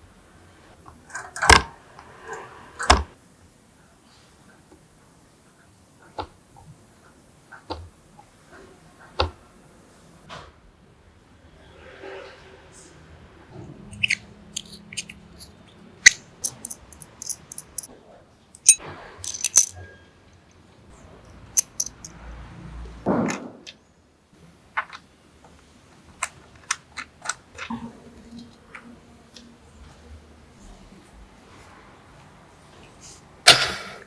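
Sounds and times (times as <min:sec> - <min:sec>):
small hard objects clicking: 0:14.0 - 0:17.9, 0:18.6 - 0:19.8, 0:21.3 - 0:22.1.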